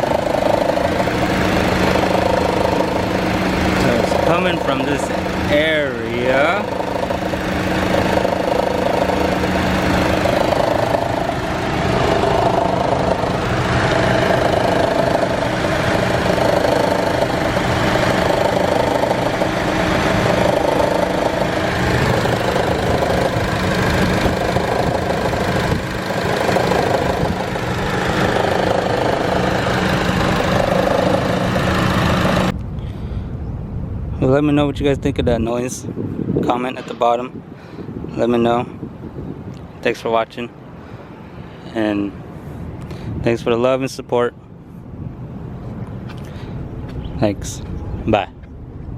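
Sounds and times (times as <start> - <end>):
car engine idling: 0.0 - 32.5
loud growling from exhaust: 0.0 - 32.5.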